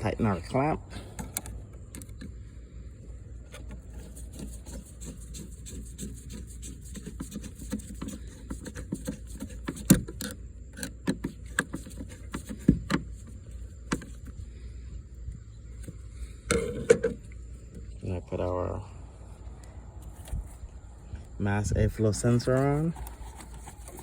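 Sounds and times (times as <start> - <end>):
steady low hum: 0.0 - 24.0
hands handling hose: 3.4 - 14.4, 22.4 - 24.0.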